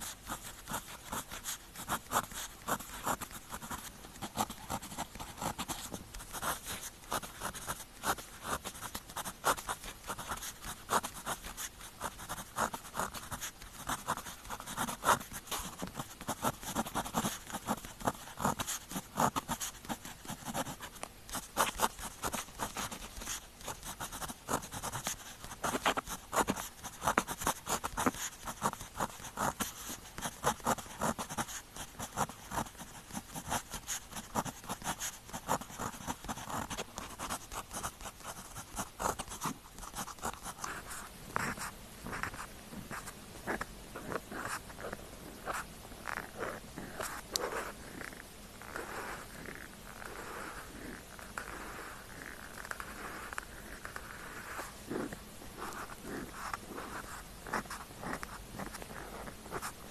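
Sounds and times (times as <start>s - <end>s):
pen scratching on paper: 0.0s - 59.9s.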